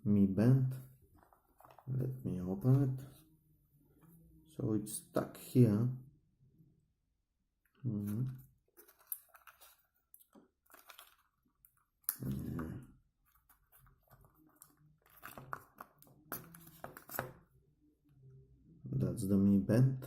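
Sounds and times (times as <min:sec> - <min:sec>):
packaging clicks and rustles: 0:08.8 - 0:11.9.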